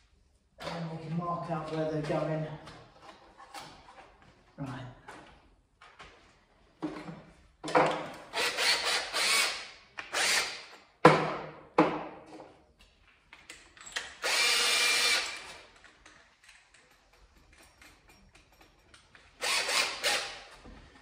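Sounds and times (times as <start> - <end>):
power drill running: 8.3 - 10.8, 14.2 - 15.6, 19.4 - 20.6.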